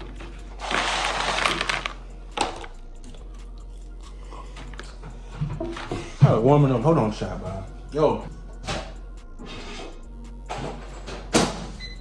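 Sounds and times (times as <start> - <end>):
packaging crinkling and rustling: 0.0 - 2.7.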